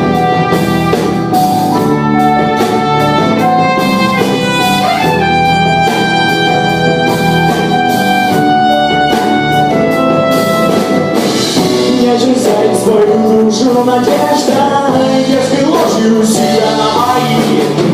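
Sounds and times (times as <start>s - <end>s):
violin melody: 0.0s - 12.0s
band with steady drum beat: 0.0s - 17.9s.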